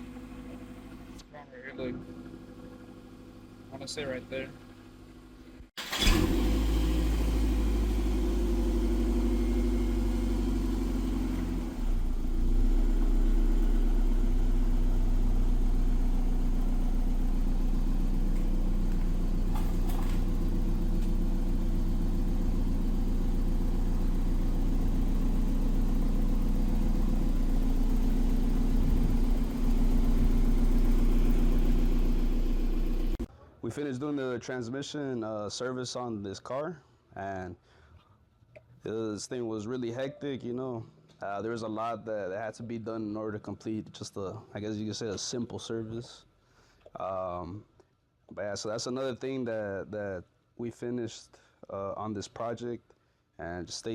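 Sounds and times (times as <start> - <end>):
car engine idling: 0.0 - 1.2, 4.8 - 33.3.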